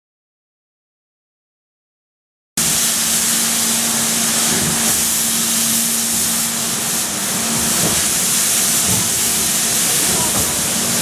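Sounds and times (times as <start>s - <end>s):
steam locomotive hissing: 2.6s - 11.0s.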